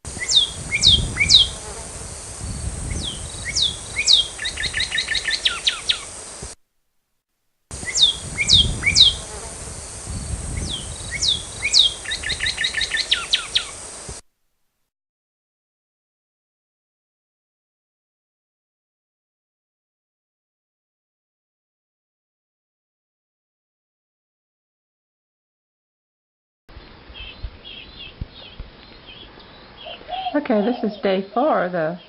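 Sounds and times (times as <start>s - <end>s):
bird chip calls: 0.1s - 1.6s, 2.9s - 6.1s, 7.8s - 9.2s, 10.6s - 13.8s, 27.1s - 32.0s.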